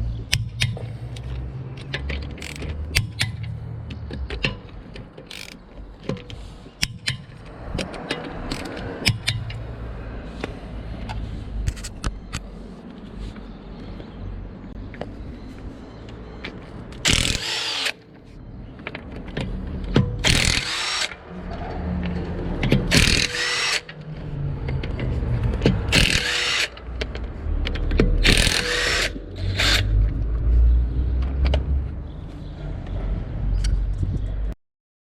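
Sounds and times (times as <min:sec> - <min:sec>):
impact driver bursts: 0:02.4 - 0:02.7, 0:17.0 - 0:18.0, 0:20.2 - 0:21.2, 0:22.9 - 0:23.9, 0:25.9 - 0:26.8, 0:28.2 - 0:29.9.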